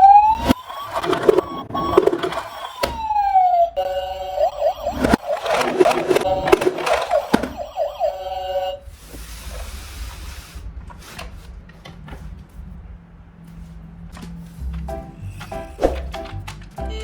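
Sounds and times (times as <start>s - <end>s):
electronic toy siren warbling: 0.0s - 8.9s.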